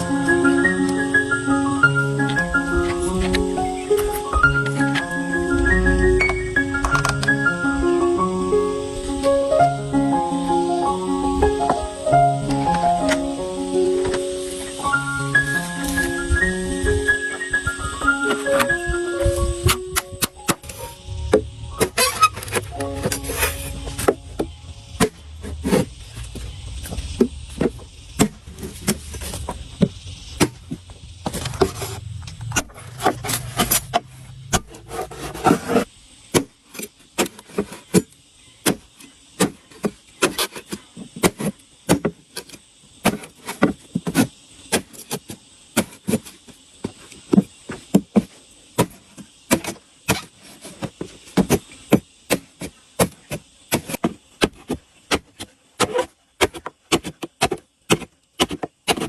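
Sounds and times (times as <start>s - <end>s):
low rumble: 5.3s - 7.2s, 20.6s - 35.4s.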